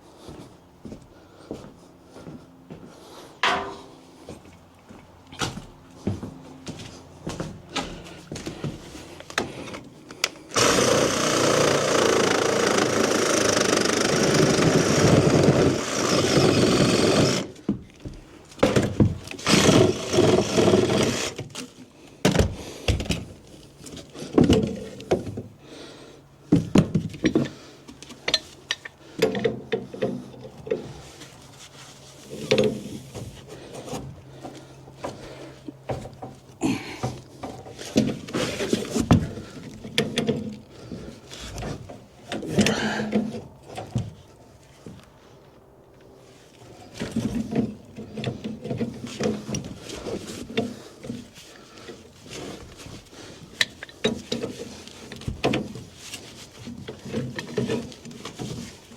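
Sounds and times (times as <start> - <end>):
reciprocating saw cutting: 10.5 - 17.5, 19.4 - 21.4.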